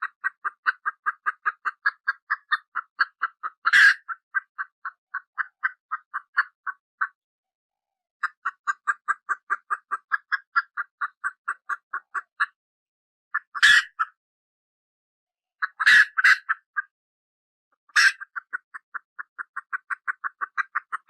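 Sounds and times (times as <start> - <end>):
baby chick peeping: 0.0 - 7.2, 8.2 - 12.6, 13.3 - 14.2, 15.6 - 16.9, 17.9 - 21.0.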